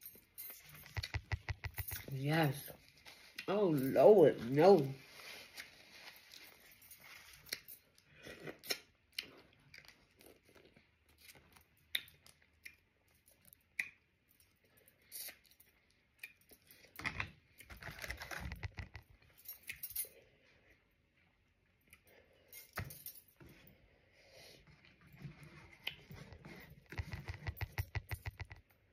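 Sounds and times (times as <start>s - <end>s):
rustling and handling: 0.0s - 8.1s, 16.6s - 20.0s, 24.6s - 28.9s
soft chewing: 0.2s - 2.2s, 2.8s - 3.5s, 4.8s - 22.7s, 23.3s - 28.9s.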